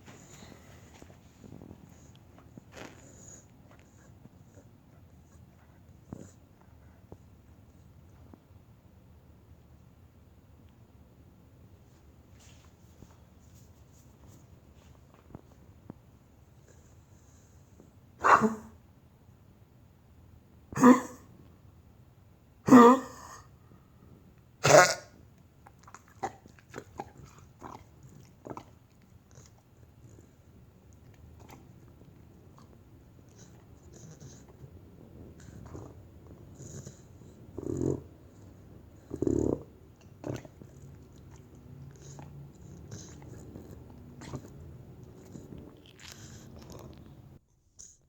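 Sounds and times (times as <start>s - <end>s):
dog hacking coughs: 18.2s - 18.7s, 20.8s - 21.3s, 22.7s - 23.4s, 24.6s - 25.2s
wet mouth clicks: 44.4s - 47.2s.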